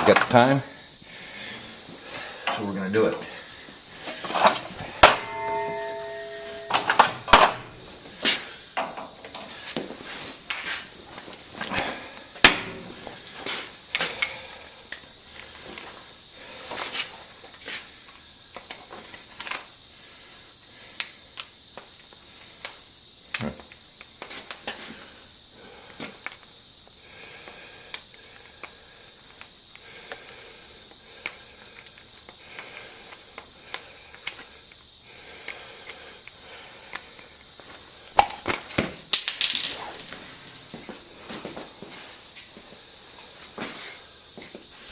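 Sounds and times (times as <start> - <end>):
hand tools knocking on metal: 5.0 - 7.8.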